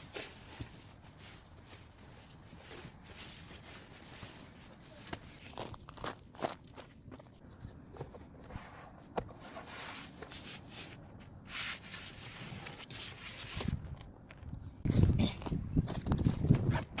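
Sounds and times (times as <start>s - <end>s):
soft rubbing and rustling: 0.0s - 5.8s, 7.3s - 14.0s.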